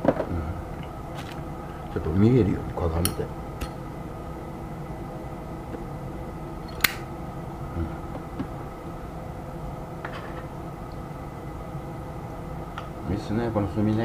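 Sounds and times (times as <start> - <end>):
room hum: 0.0 - 14.0
lighter clicking: 6.7 - 7.1.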